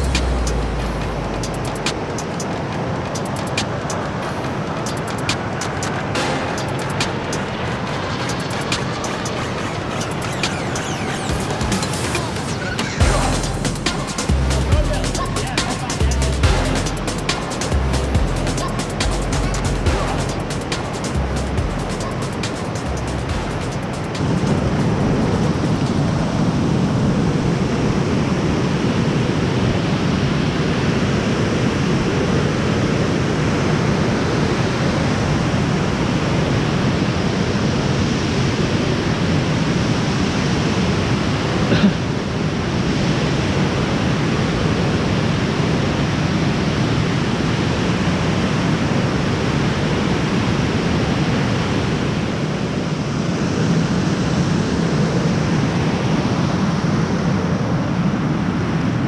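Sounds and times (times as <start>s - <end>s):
floodwater rushing: 0.0s - 28.1s.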